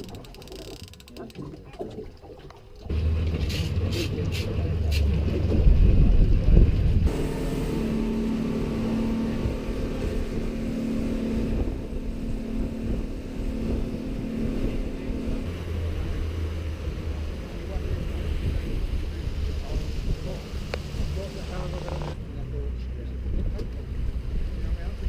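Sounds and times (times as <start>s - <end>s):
boat engine running: 0.0s - 25.0s
wind on microphone: 5.0s - 7.4s.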